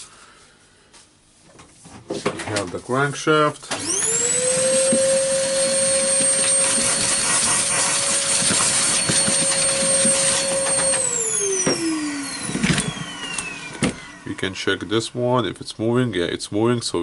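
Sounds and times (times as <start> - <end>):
small electric motor whining: 3.8 - 14.8.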